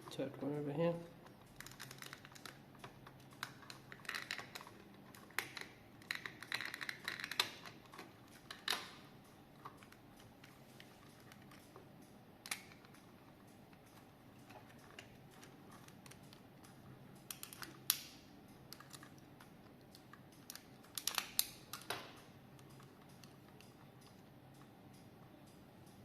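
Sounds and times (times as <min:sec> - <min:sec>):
sharp plastic snaps: 0:01.2 - 0:09.0, 0:11.1 - 0:13.2, 0:13.8 - 0:25.1
plastic clicks and scrapes: 0:01.3 - 0:08.9.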